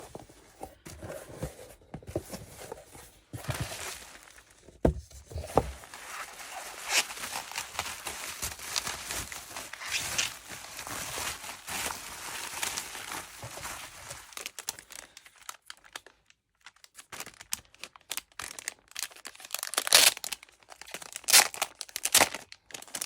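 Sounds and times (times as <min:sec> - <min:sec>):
packaging crinkling and rustling: 0:00.0 - 0:23.0
package knocks: 0:04.7 - 0:05.8.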